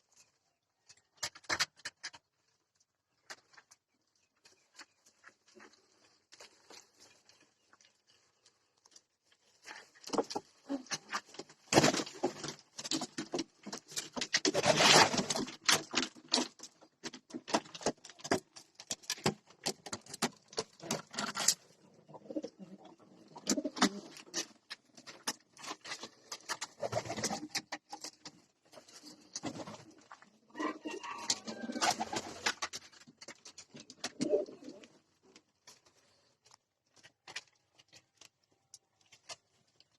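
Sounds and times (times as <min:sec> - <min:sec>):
clicks and scuffs of birds moving: 0:00.1 - 0:39.9
pigeons cooing: 0:22.1 - 0:24.2, 0:34.0 - 0:34.9.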